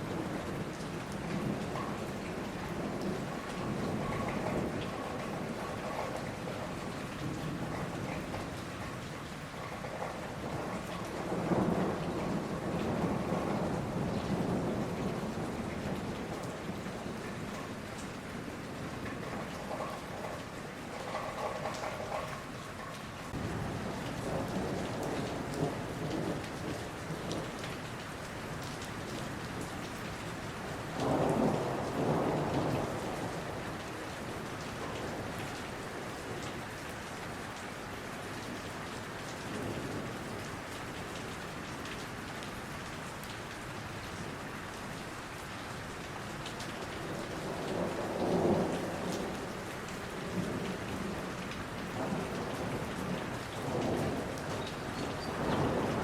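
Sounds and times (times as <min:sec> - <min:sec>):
thunder rumbling: 0:00.0 - 0:22.4, 0:23.3 - 0:27.6, 0:30.9 - 0:36.6, 0:47.0 - 0:56.0
steady rain falling: 0:00.0 - 0:56.0.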